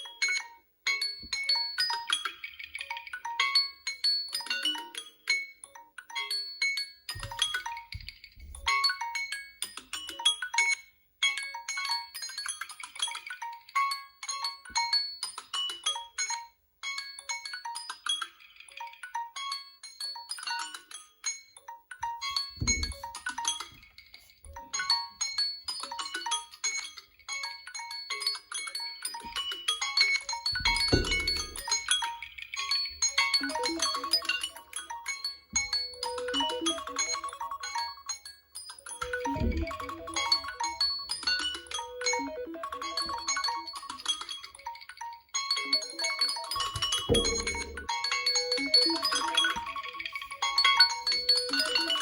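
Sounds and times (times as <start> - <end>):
marimba-like phone alarm melody: 30.0 - 32.0, 32.7 - 38.2, 38.9 - 44.4, 45.6 - 52.0
marimba-like alarm tone: 39.1 - 41.0, 46.6 - 49.8.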